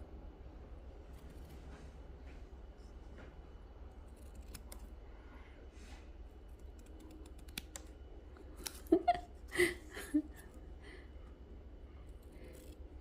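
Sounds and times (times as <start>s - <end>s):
scissors snipping: 4.0s - 4.9s, 6.5s - 8.9s.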